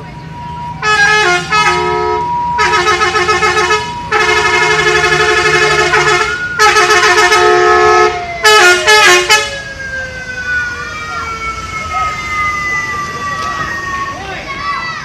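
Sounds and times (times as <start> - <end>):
multi-tone air horn tune: 0.8 - 9.6.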